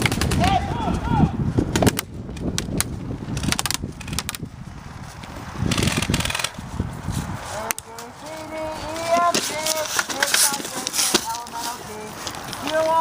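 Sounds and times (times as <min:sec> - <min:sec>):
wind rumble on microphone: 0:00.0 - 0:09.9
rustling movement: 0:00.0 - 0:13.0.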